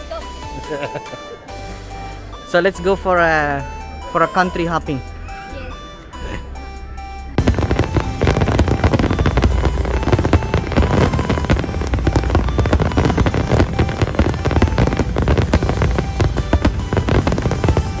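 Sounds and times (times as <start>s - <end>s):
music: 0.0s - 18.0s
fireworks bangs and crackles: 7.3s - 18.0s.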